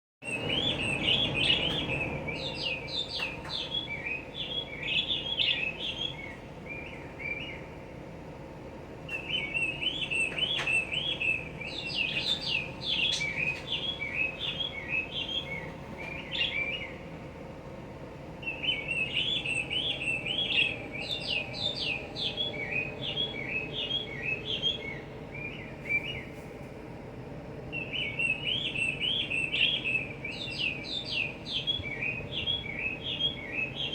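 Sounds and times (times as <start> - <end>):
small bird chirping: 0.3 - 7.6, 9.1 - 17.0, 27.8 - 33.9.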